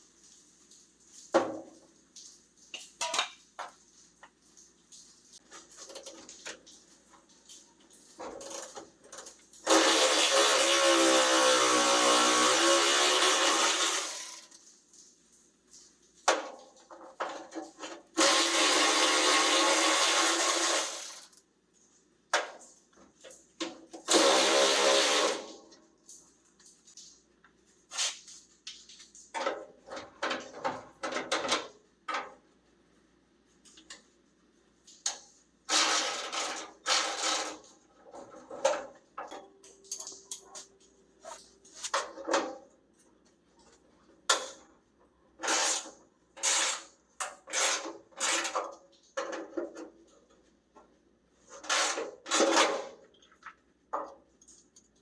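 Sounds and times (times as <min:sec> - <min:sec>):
power drill running: 0:09.7 - 0:14.5, 0:18.2 - 0:21.3, 0:24.1 - 0:25.5.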